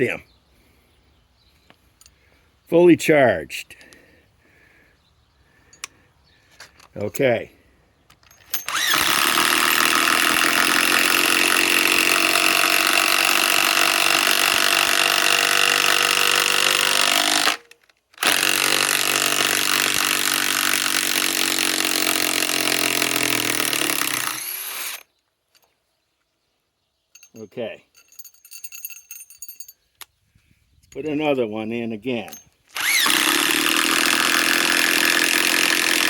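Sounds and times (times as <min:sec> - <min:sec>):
impact wrench driving a fastener: 0:08.4 - 0:25.1, 0:32.7 - 0:36.0.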